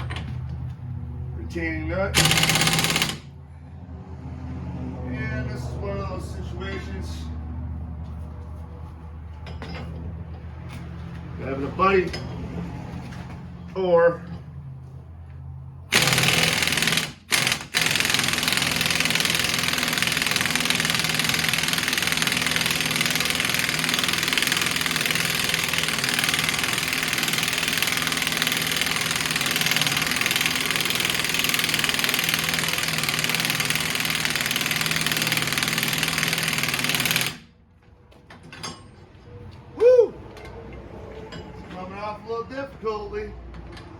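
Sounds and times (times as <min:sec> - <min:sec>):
impact wrench hammering: 0:02.1 - 0:03.3, 0:15.9 - 0:37.5.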